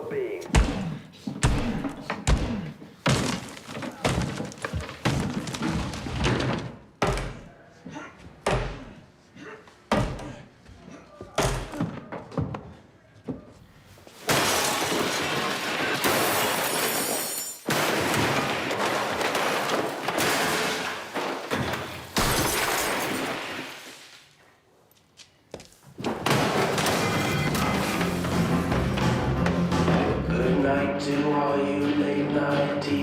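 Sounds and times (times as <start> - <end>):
glass shattering: 14.2 - 23.9, 26.3 - 28.2.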